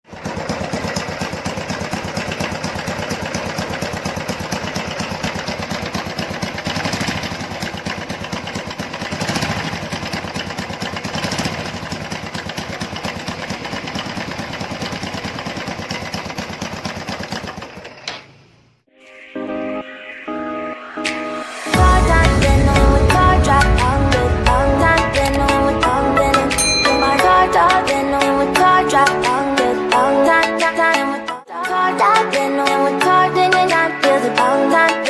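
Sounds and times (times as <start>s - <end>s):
rough motorcycle engine running: 0.1s - 18.1s.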